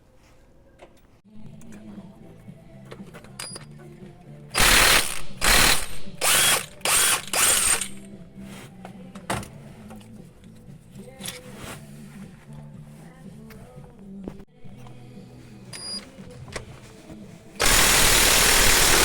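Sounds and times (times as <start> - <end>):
ratchet wrench clicking: 4.6 - 8.0, 17.6 - 19.0.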